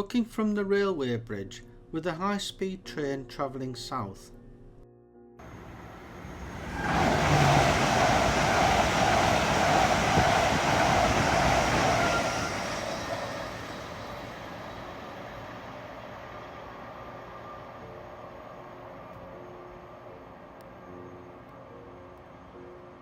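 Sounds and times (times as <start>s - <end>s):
train wheels rushing on rail: 5.4s - 19.2s.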